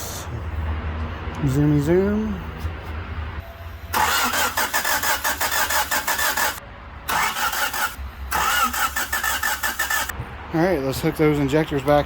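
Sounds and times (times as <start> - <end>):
starter motor cranking engine: 3.9 - 10.1.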